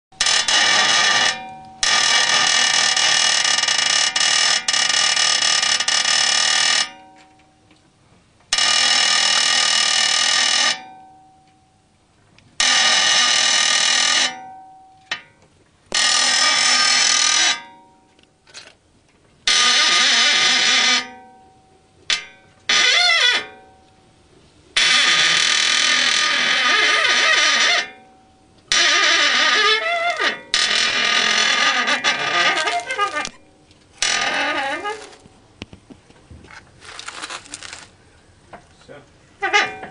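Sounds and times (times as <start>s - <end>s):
high piercing engine squeak: 24.9s - 35.2s.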